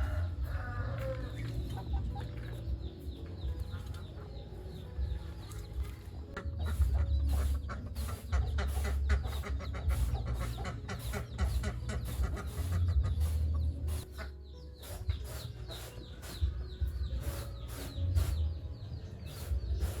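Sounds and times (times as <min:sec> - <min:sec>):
chickens clucking: 0:00.0 - 0:20.0.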